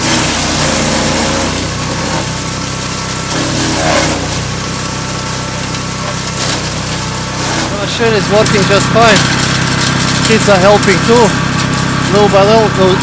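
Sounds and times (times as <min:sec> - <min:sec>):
chipper rushing surges: 0:00.0 - 0:13.0
wood chipper engine running: 0:00.0 - 0:13.0.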